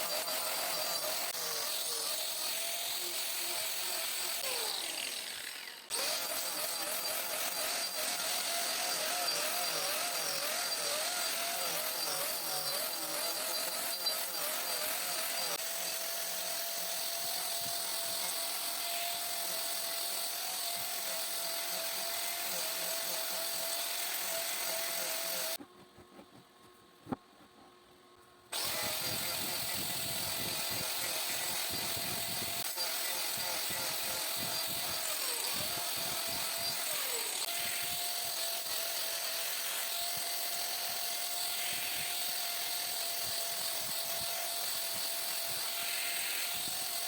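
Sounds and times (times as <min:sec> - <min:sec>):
electric power tool running: 0:00.0 - 0:25.6, 0:28.6 - 0:47.0.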